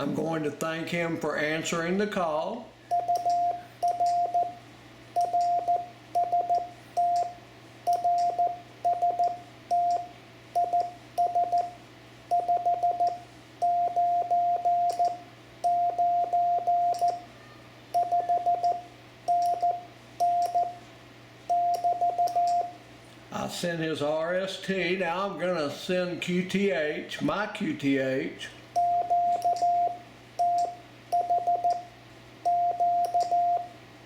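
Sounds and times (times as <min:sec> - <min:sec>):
morse code tone: 0:02.9 - 0:04.6, 0:05.2 - 0:17.2, 0:18.0 - 0:20.8, 0:21.5 - 0:22.8, 0:28.8 - 0:31.9, 0:32.5 - 0:33.8.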